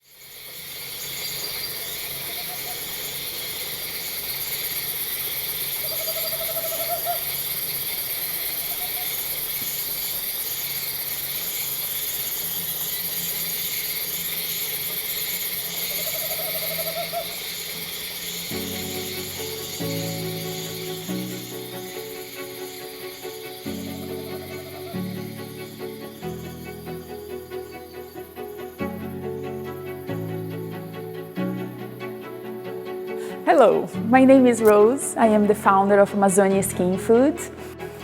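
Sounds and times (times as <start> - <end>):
insect chorus: 0.0 - 35.7
rising trilled animal call: 1.4 - 3.4, 5.6 - 10.0, 15.0 - 36.1.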